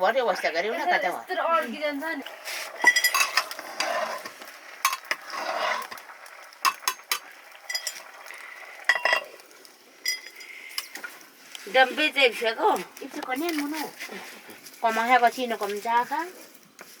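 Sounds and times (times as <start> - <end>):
metal pots and utensils clinking: 2.6 - 6.0, 6.6 - 9.4, 10.0 - 11.2.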